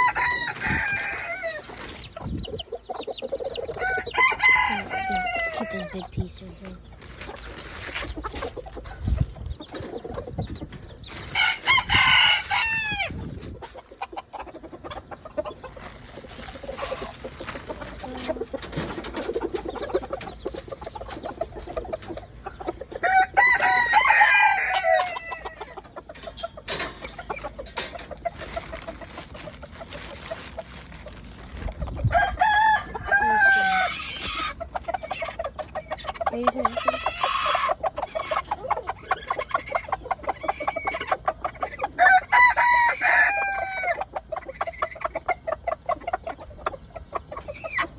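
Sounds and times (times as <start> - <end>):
rooster crowing: 0.0 - 1.6, 3.8 - 5.8, 11.4 - 13.2, 23.0 - 25.5, 32.1 - 34.0, 42.0 - 44.0
chickens clucking: 0.0 - 47.9.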